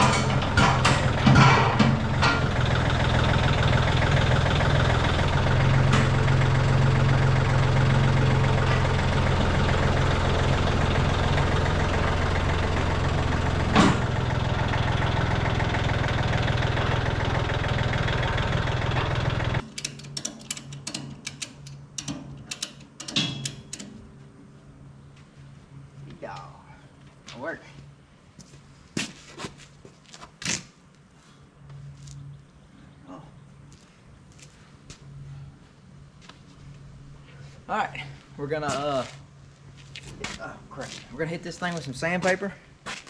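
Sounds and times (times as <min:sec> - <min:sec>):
engine running steadily: 0:00.0 - 0:27.5.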